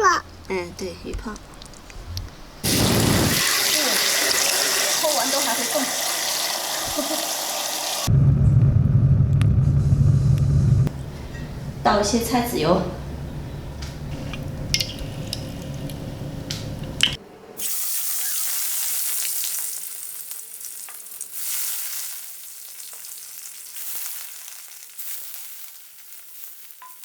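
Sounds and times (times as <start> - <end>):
stirring clicks: 0.3 - 2.4, 13.6 - 17.2
fish sizzling in hot oil: 2.6 - 8.1, 14.8 - 27.0
low steady rumble: 8.1 - 17.2.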